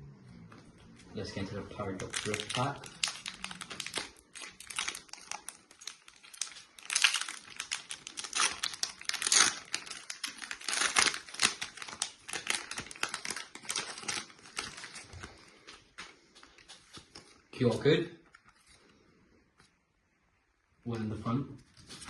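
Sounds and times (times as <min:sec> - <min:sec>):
foil wrapper crinkling and tearing: 0:01.8 - 0:15.6.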